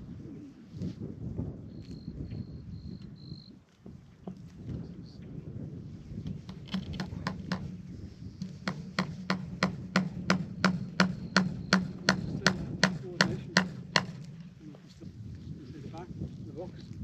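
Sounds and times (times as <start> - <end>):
steady low hum: 7.1 - 16.4
hammer striking: 8.4 - 14.6.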